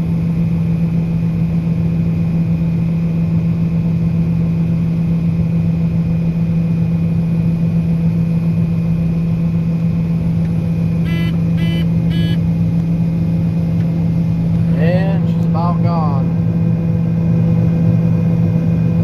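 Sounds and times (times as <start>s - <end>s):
diesel engine humming: 7.7s - 19.0s
short electronic beeps: 11.0s - 12.4s.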